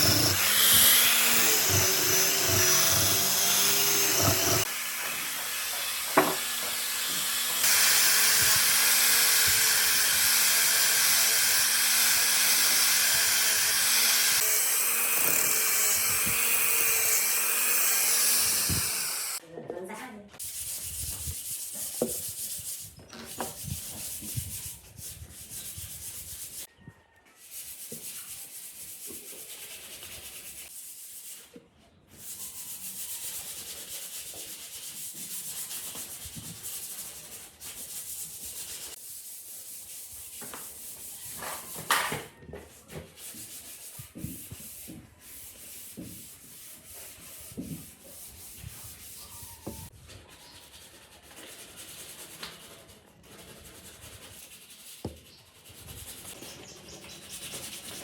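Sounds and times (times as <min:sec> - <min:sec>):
power tool running: 0:00.0 - 0:19.4
sanding on wood: 0:00.0 - 0:19.4, 0:20.4 - 0:26.7, 0:32.2 - 0:41.8, 0:42.8 - 0:58.0.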